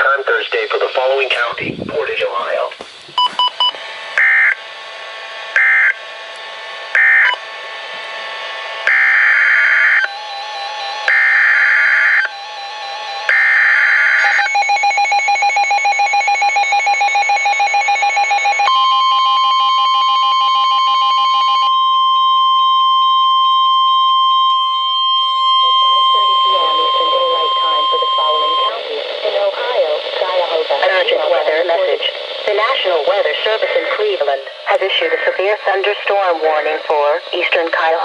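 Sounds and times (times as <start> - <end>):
screeching data tone bursts: 5.6 - 6.0, 8.9 - 28.8
steady high attention tone: 8.8 - 38.0.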